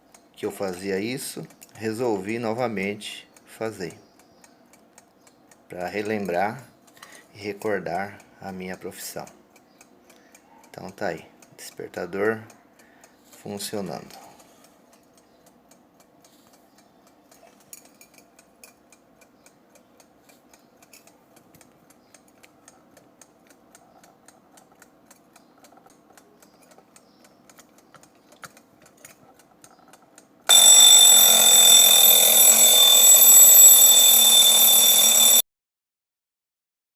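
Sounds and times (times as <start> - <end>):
alarm bell ringing: 30.5 - 35.4
alarm clock ticking: 30.5 - 35.4.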